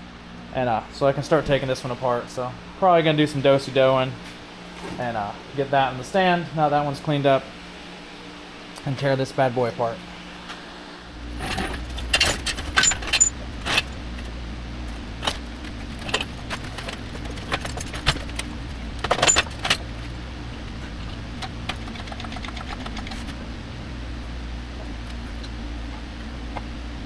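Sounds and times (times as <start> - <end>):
steady low hum: 0.0 - 27.0
metal tools and engine parts clanking: 11.2 - 14.3, 14.9 - 20.2.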